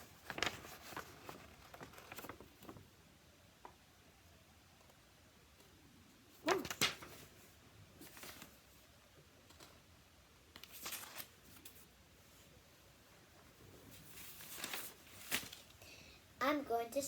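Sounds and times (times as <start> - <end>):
faint rustles of handling: 0.0 - 2.9, 6.8 - 9.9, 10.5 - 16.3.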